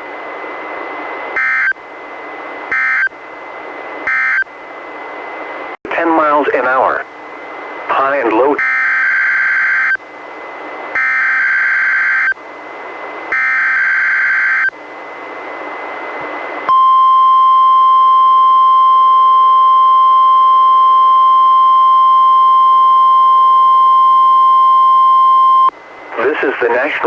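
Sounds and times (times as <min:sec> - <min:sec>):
steady warning alarm tone: 0:01.4 - 0:01.8, 0:02.7 - 0:03.2, 0:04.0 - 0:04.5, 0:08.6 - 0:10.1, 0:10.9 - 0:12.4, 0:13.3 - 0:14.8, 0:16.7 - 0:25.8
radio hiss: 0:05.9 - 0:07.0, 0:07.9 - 0:08.6, 0:26.1 - 0:27.0.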